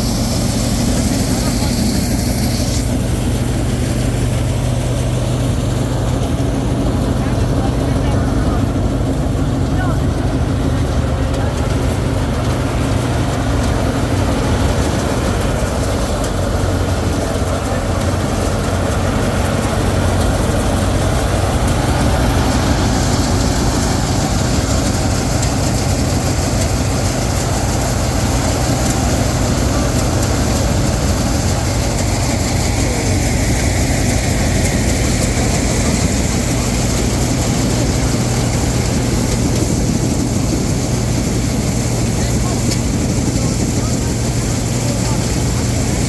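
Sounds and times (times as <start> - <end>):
threshing machinery hiss: 0.0 - 9.6
combine harvester engine drone: 0.0 - 46.0.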